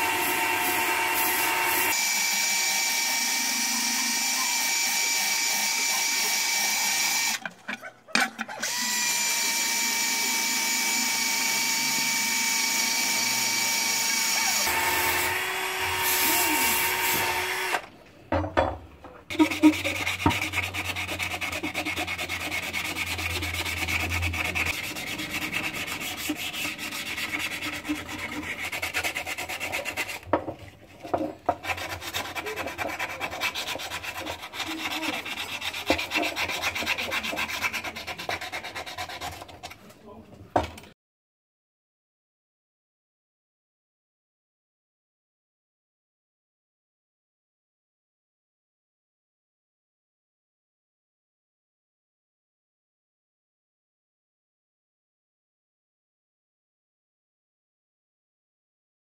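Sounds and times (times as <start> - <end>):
power tool whine: 0.0 - 7.4, 8.6 - 17.9.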